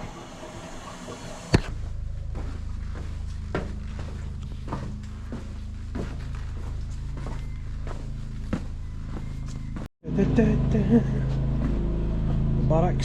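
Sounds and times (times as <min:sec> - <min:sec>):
footsteps walking: 0:01.6 - 0:09.9, 0:11.2 - 0:12.8
steady low rumble: 0:01.6 - 0:13.0.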